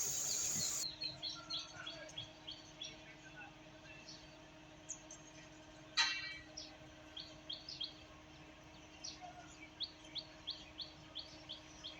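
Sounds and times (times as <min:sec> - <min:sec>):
birds chirping: 0:00.0 - 0:00.8
faint steady hum: 0:00.0 - 0:00.8.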